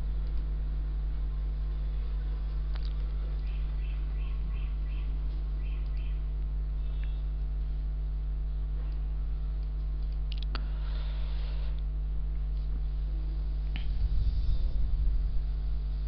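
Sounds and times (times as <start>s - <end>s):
electrical mains hum: 0.0s - 16.0s
faint clicks: 5.3s - 7.2s.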